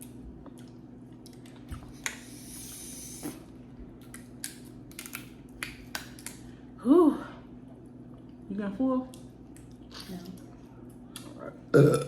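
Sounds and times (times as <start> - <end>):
clicks and cracks of seafood shells: 4.0 - 6.5.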